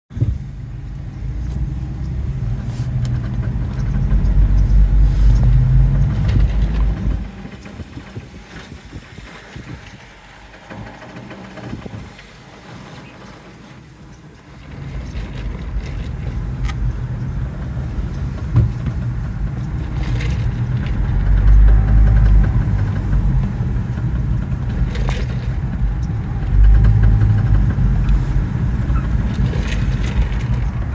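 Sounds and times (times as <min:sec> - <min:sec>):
car driving slowly with low rumble: 0:00.1 - 0:30.9.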